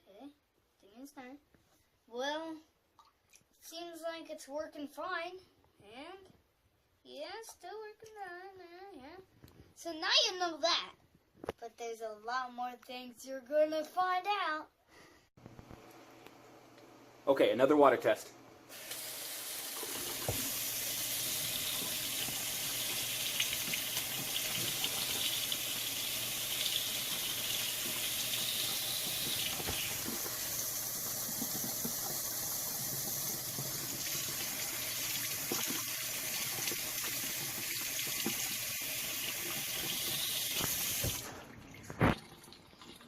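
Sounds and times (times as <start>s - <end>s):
tap water running into sink: 18.7s - 43.0s.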